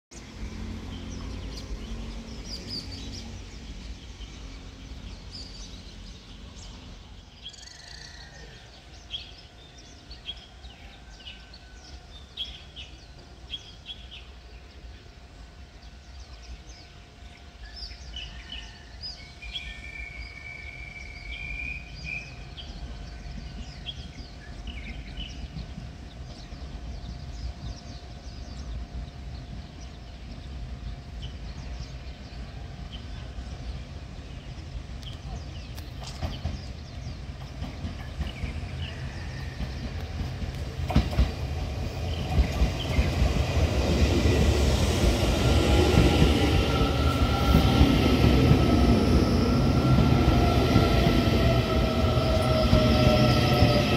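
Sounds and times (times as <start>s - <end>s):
small birds chirping: 19.5s - 53.9s.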